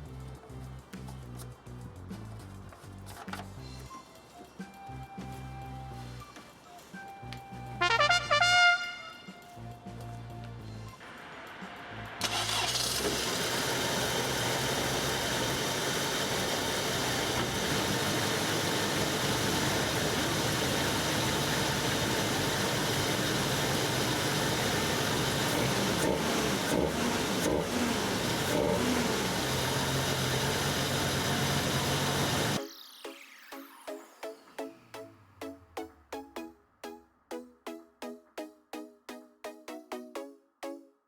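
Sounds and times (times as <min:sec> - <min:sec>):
car engine running: 0:12.0 - 0:32.6.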